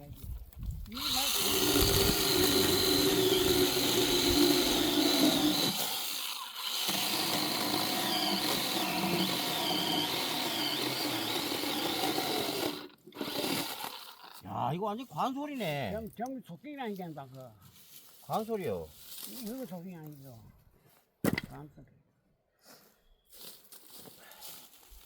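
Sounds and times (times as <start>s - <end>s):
power saw cutting log: 0.9s - 14.5s.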